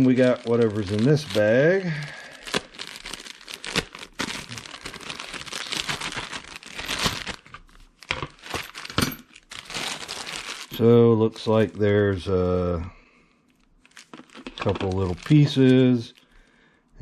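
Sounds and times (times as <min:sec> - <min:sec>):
plastic bag crinkling: 0:00.0 - 0:12.3, 0:13.5 - 0:16.2.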